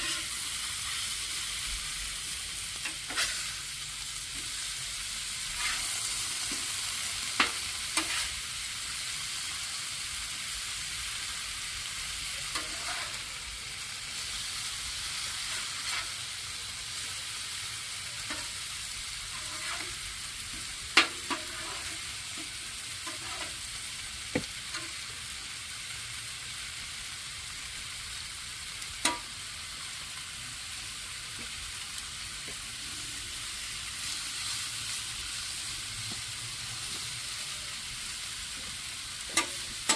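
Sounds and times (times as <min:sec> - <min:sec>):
vegetables sizzling in butter: 0:00.0 - 0:39.9
utensil clicking on pan: 0:29.0 - 0:29.3.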